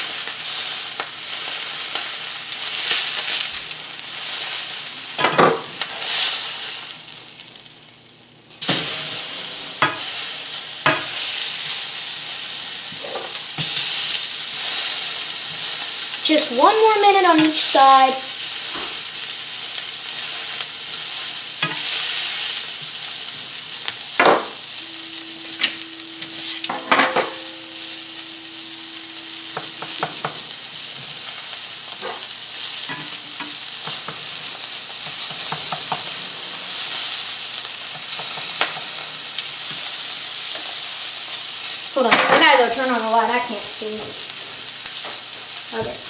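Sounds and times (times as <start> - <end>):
steak sizzling in a pan: 0.0 - 46.0
steady low hum: 24.8 - 31.3.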